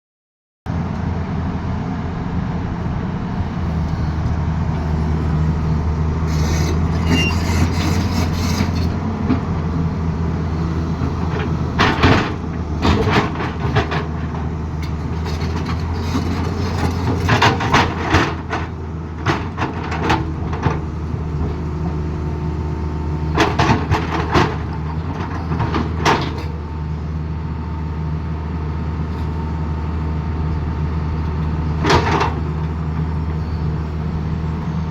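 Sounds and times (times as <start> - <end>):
excavator diesel engine running: 0.7 - 34.9
clatter and scraping on road: 3.6 - 26.7, 29.0 - 29.6, 30.4 - 33.6.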